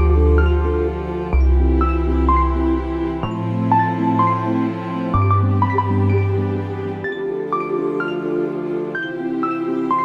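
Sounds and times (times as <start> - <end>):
gentle new-age music: 0.0 - 10.0.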